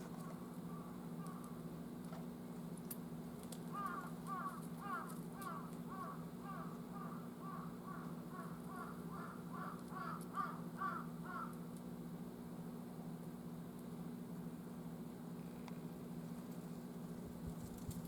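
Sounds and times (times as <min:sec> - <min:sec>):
crow cawing: 0:03.7 - 0:11.6.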